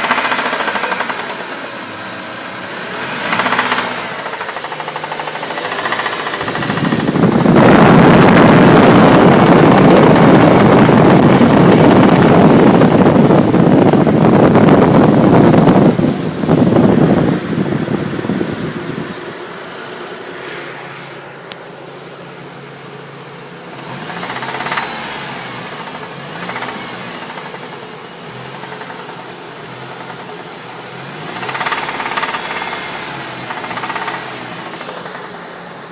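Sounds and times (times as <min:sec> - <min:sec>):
car engine knocking: 0:00.0 - 0:02.4, 0:03.2 - 0:19.9, 0:23.2 - 0:35.9
loud rushing noise: 0:00.0 - 0:27.9.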